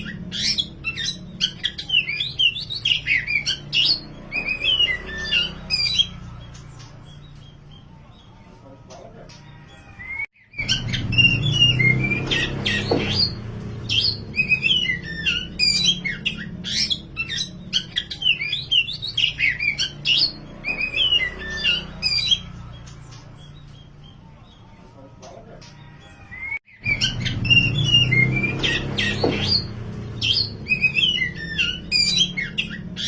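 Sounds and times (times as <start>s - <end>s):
songbird singing whistled notes: 26.3s - 33.0s.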